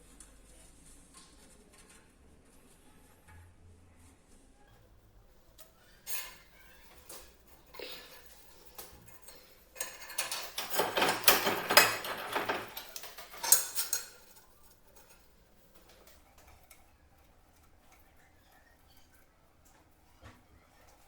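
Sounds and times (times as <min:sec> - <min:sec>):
hard objects clinking and clattering: 0:06.1 - 0:16.8.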